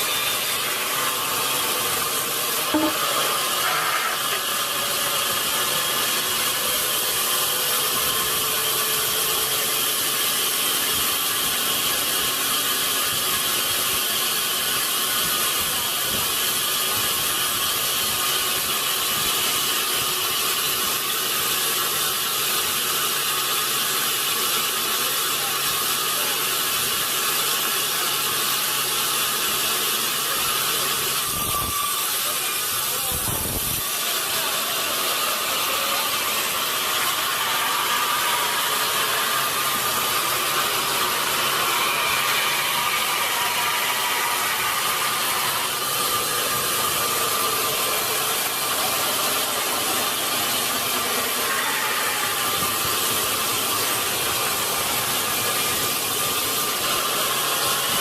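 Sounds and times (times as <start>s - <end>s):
sawmill machinery running: 0.0s - 58.0s.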